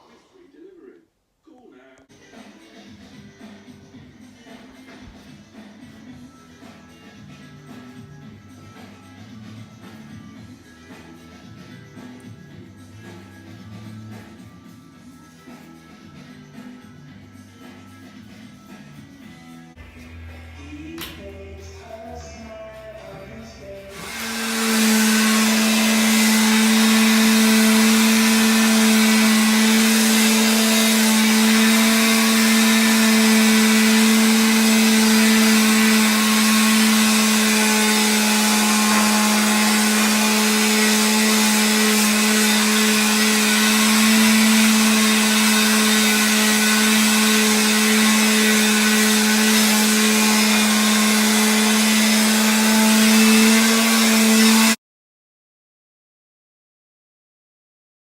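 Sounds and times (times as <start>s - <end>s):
small electric motor humming: 23.9s - 54.8s.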